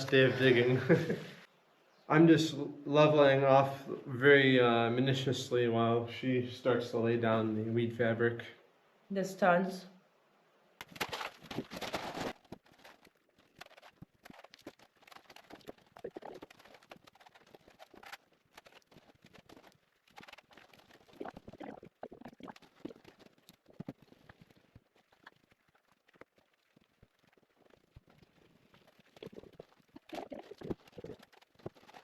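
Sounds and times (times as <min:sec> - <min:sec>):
gravel clattering and crunching: 0:10.8 - 0:32.0.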